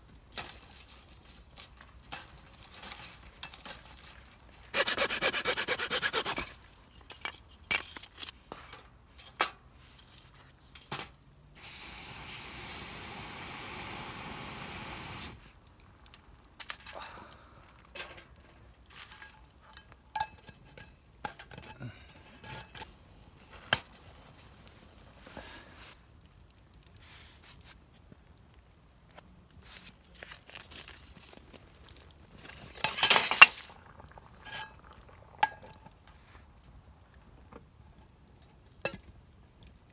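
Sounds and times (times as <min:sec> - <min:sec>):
steady hiss: 0:11.6 - 0:15.6
metal pots and utensils clinking: 0:32.4 - 0:36.0.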